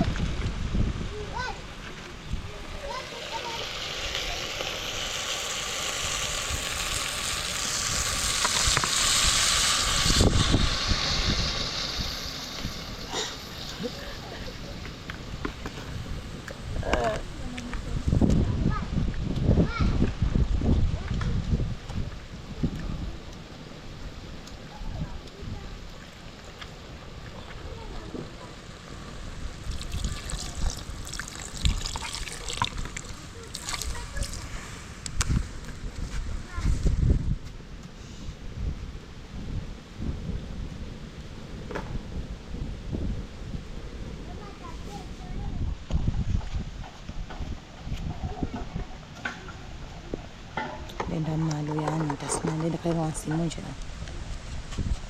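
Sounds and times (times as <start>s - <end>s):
food sizzling in hot oil: 2.7s - 18.2s, 28.5s - 35.9s
water trickling and splashing: 24.3s - 36.1s.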